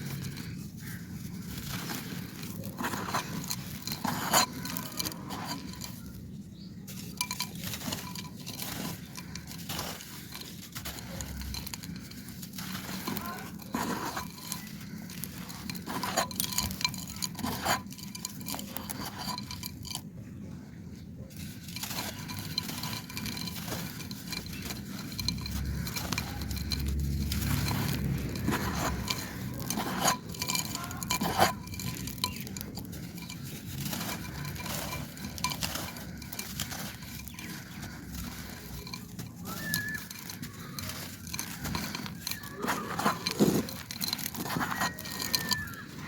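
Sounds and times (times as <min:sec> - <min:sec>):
dry clay crunching and clinking: 0:00.0 - 0:46.0.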